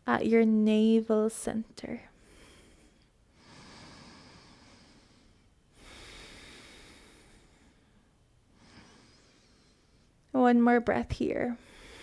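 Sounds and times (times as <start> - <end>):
person breathing deeply: 2.2 - 10.2, 11.6 - 12.0.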